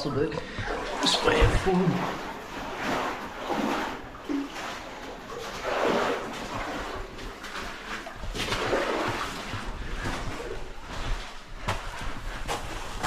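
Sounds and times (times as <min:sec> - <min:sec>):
water splashing in stream: 0:00.7 - 0:10.2.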